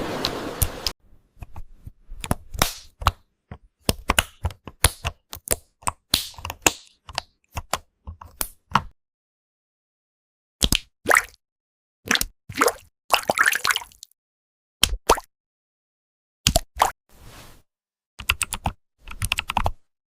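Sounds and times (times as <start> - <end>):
keyboard typing: 18.2 - 19.8.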